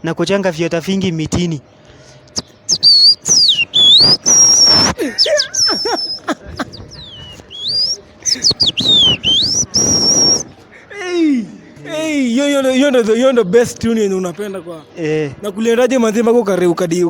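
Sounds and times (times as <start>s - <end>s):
man whistling bird song: 2.4s - 10.5s.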